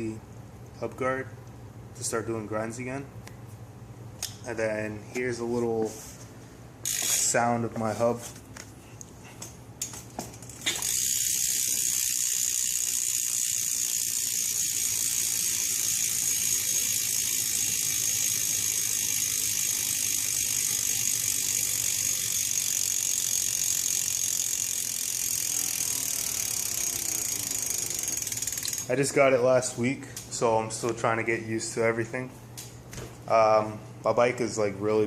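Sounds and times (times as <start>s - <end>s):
bike hub ratcheting: 6.8s - 7.4s, 9.8s - 29.0s.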